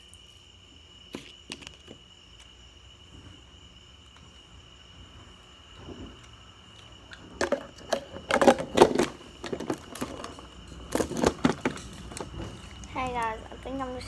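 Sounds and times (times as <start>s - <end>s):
objects knocking and clattering: 7.1s - 13.2s.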